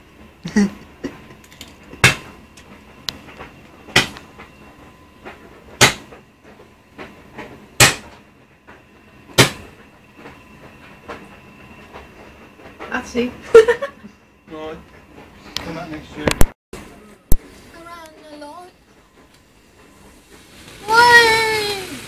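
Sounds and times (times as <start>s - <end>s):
fireworks bangs: 20.1s - 22.0s.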